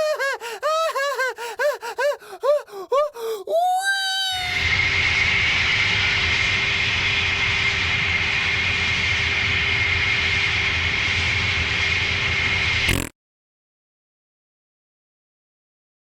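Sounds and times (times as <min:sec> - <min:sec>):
loud roar with high whine: 0:04.6 - 0:13.0.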